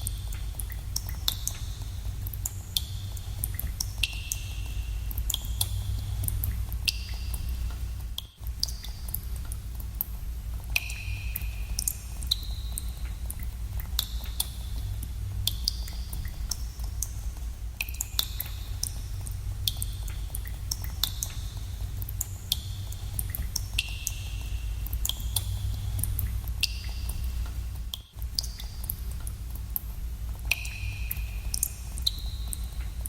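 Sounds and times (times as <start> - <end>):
water drops plinking in cave: 0.0 - 33.0.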